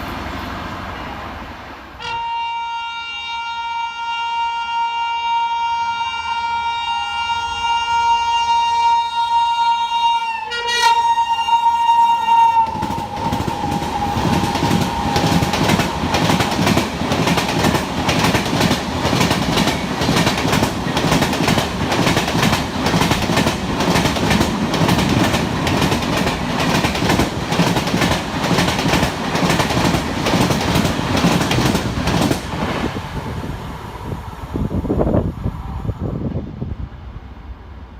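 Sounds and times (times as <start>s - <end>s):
shrill locomotive horn: 2.0s - 16.0s
train wheels clattering: 12.6s - 32.9s.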